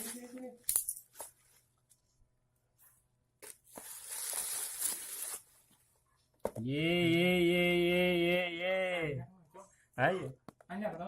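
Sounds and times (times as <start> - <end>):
packaging tearing: 3.7 - 5.5.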